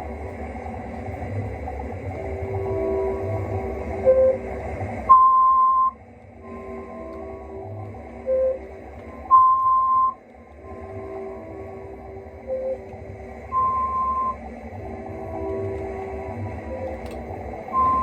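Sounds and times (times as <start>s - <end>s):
soft held electronic tones: 2.6s - 4.5s, 5.1s - 18.0s
high electronic beep: 17.7s - 18.0s.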